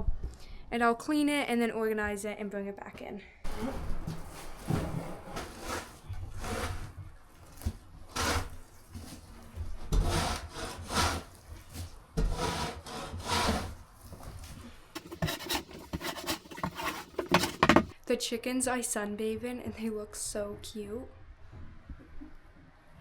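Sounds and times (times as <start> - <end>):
scraping on wood: 12.2 - 13.8, 15.0 - 18.0.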